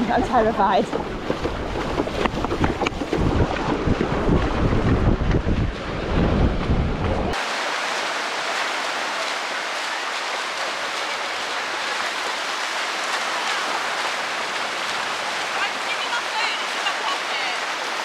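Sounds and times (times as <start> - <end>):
wind buffeting microphone: 0.0 - 7.4
sea water washing and splashing: 0.0 - 18.0.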